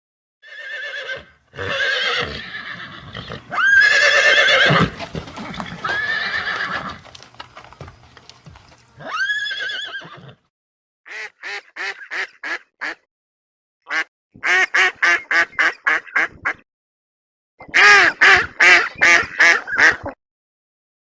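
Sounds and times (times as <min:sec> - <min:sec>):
horse neighing: 0:00.4 - 0:07.0, 0:08.9 - 0:10.4
ducks quacking: 0:11.1 - 0:13.0, 0:13.9 - 0:16.6, 0:17.6 - 0:20.2.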